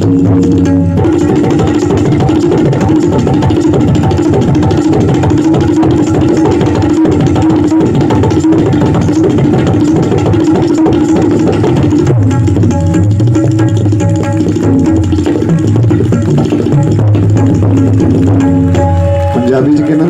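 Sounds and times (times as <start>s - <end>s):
tabla played fast: 0.0s - 20.0s.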